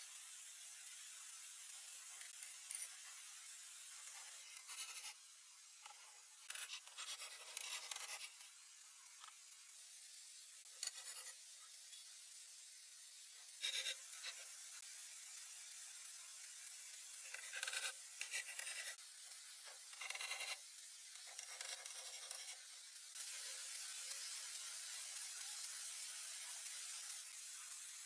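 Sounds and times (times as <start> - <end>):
faint hiss: 0.0 - 7.6.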